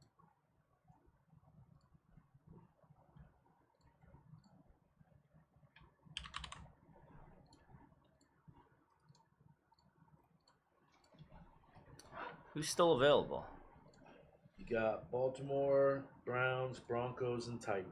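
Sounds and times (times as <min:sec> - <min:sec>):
faint clicks: 0:07.3 - 0:12.2.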